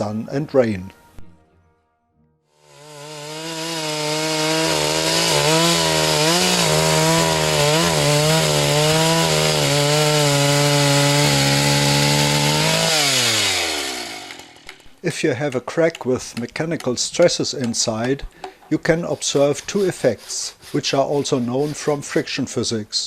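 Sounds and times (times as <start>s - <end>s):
power tool motor running: 2.5s - 14.9s, 21.2s - 22.0s.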